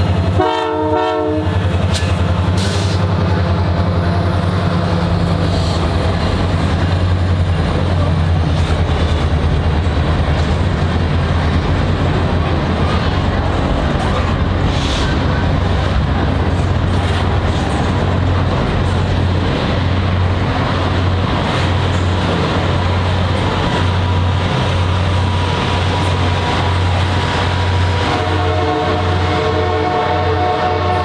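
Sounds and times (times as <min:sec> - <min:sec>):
train rumbling on rails: 0:00.0 - 0:31.0
locomotive air horn: 0:00.3 - 0:01.8, 0:27.8 - 0:31.0.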